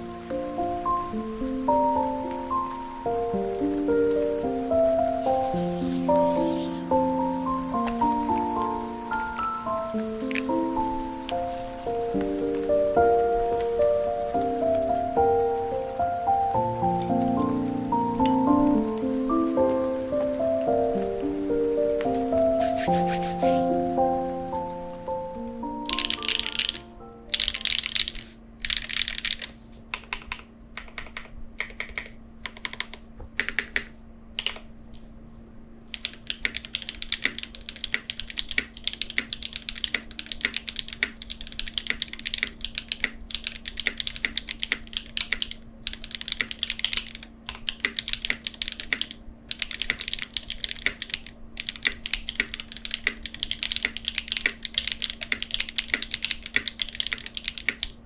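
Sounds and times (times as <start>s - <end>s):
mechanical keyboard typing: 5.2s - 8.6s, 10.2s - 11.8s, 25.9s - 34.6s, 35.9s - 58.0s.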